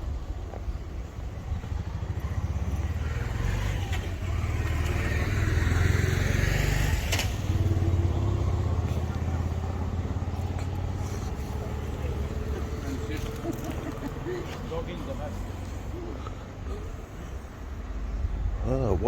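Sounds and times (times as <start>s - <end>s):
vehicle driving past: 1.2s - 16.3s.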